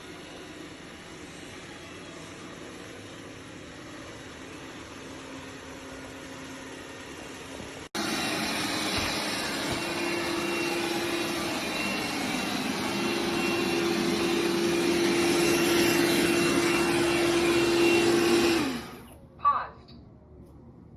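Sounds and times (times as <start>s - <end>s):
robot vacuum motor whining: 8.0s - 19.2s.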